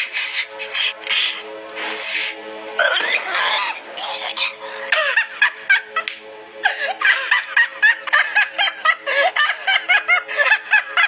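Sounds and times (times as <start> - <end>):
faint background music: 0.0 - 11.0
high-pitched snickering laughter: 2.8 - 11.0.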